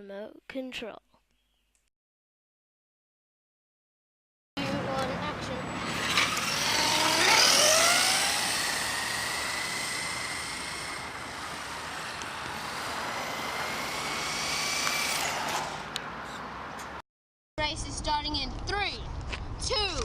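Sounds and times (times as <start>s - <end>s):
toy car motor whining: 5.7s - 16.0s.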